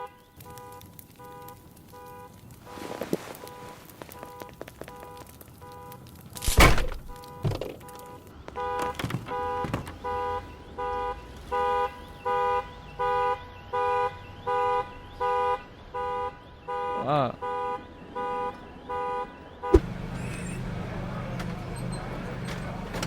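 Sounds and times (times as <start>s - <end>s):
thumps: 6.4s - 7.9s, 19.7s - 23.0s.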